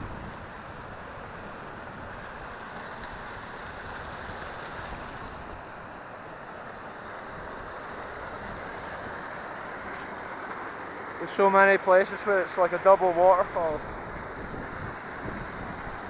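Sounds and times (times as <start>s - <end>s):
wind buffeting microphone: 13.5s - 16.0s.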